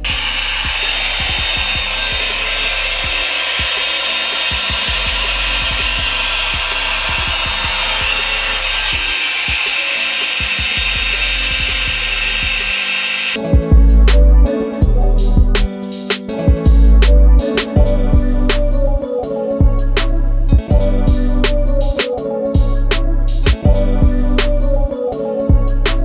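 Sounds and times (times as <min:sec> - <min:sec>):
hot-air brush dryer running: 0:00.0 - 0:13.6.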